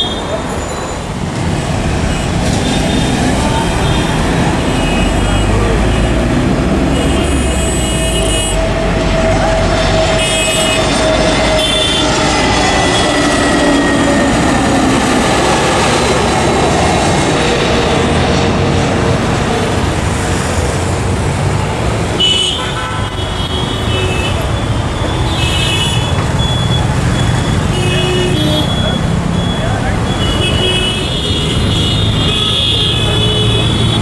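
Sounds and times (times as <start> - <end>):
loud traffic noise: 0.0 - 34.0
vehicle horns tooting: 2.1 - 15.9, 22.0 - 34.0.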